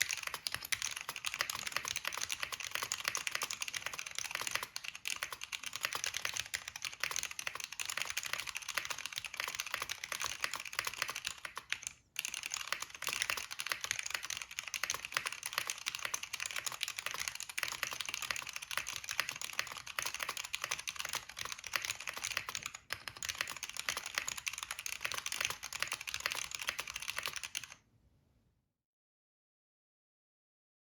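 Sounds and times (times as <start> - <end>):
fast keyboard typing: 0.0 - 27.8.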